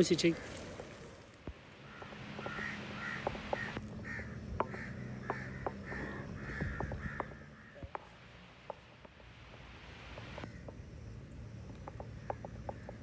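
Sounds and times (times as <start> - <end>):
bird calling: 1.7 - 8.8, 11.8 - 13.0.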